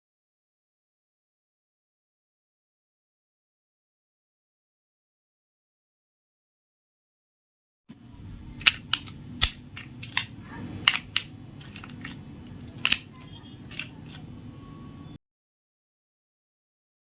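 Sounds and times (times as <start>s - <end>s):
low steady hum: 7.9s - 15.2s
sharp clicks and snaps: 8.6s - 14.3s.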